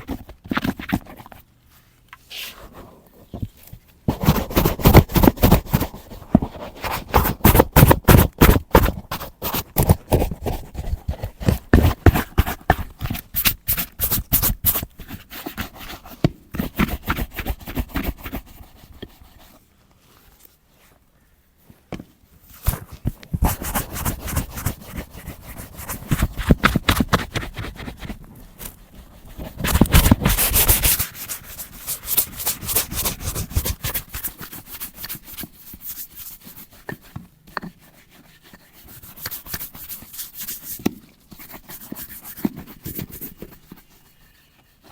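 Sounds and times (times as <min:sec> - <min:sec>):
brush scrubbing leather boot: 0:29.6 - 0:36.7.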